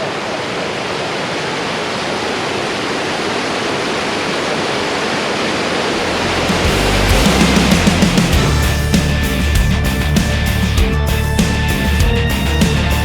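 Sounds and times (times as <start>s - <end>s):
waterfall rushing: 5.9s - 9.6s
heavy rock music: 6.0s - 13.0s.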